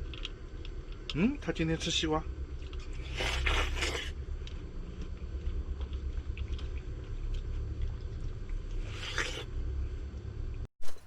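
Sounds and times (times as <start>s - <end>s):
low hum: 0.0s - 11.0s.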